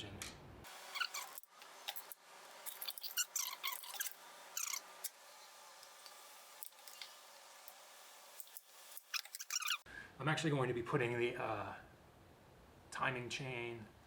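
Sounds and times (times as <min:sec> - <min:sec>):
metal parts scraping and clicking: 0:00.9 - 0:05.2, 0:06.0 - 0:09.8.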